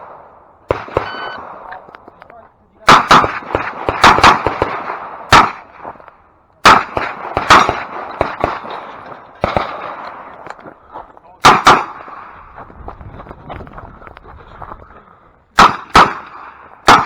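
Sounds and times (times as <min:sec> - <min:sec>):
revolver gunshots with echo: 0:00.0 - 0:01.9, 0:02.8 - 0:10.5, 0:11.4 - 0:12.4, 0:15.6 - 0:17.0.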